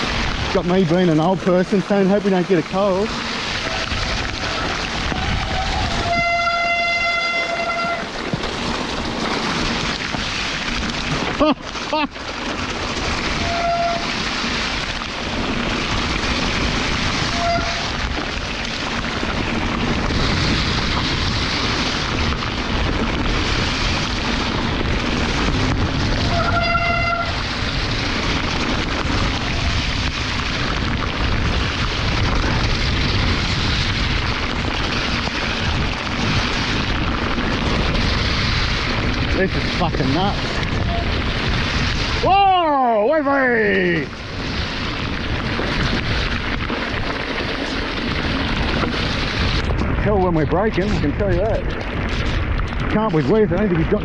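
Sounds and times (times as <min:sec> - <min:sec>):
heavy rain: 0:00.0 - 0:54.0
tyres rumbling on wet trail: 0:00.0 - 0:54.0
wind buffeting microphone: 0:00.0 - 0:54.0
bike brakes squealing: 0:03.5 - 0:08.3, 0:13.2 - 0:14.3, 0:17.1 - 0:18.0, 0:26.1 - 0:27.4, 0:40.7 - 0:41.2.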